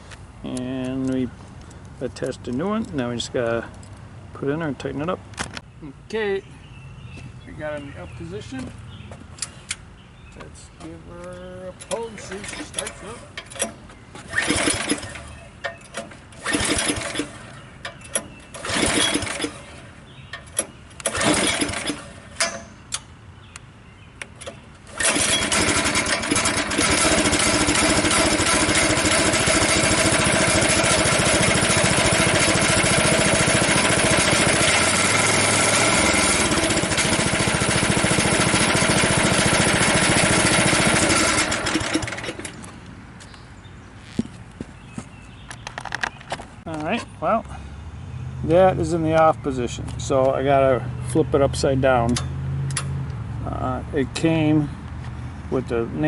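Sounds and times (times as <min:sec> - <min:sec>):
recoil starter rope pulls: 0:11.8 - 0:22.7, 0:24.4 - 0:42.8
small gas engine running: 0:14.3 - 0:15.4, 0:16.4 - 0:17.7, 0:18.4 - 0:20.2, 0:21.0 - 0:22.4, 0:24.9 - 0:42.7.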